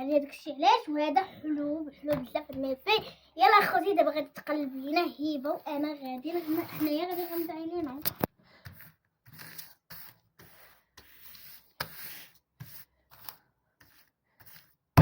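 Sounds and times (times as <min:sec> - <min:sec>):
items scraping on a table: 0:05.5 - 0:07.5.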